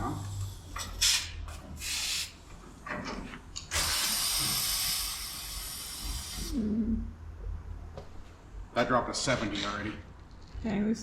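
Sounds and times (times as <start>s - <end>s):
compressed air hissing out: 0.2s - 2.4s, 3.7s - 6.6s.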